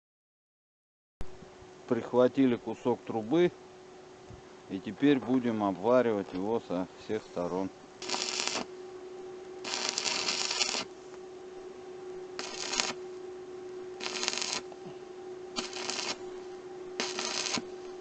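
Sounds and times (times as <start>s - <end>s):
steady hum: 1.2s - 18.0s
arc welding crackling: 7.6s - 8.7s, 9.6s - 11.0s, 12.3s - 18.0s.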